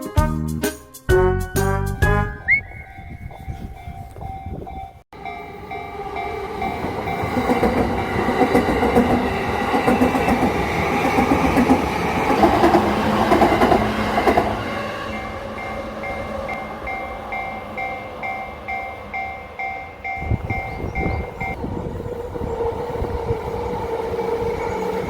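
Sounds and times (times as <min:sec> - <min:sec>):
crossing warning bell ringing: 0:02.4 - 0:11.0, 0:13.7 - 0:21.8
train wheels rumbling on rails: 0:02.7 - 0:25.0.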